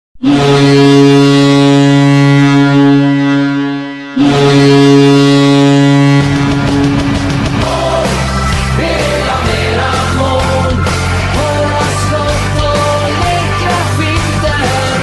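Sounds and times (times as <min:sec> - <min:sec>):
goal horn blasts: 0:00.2 - 0:07.4
loud rock music: 0:05.2 - 0:15.0.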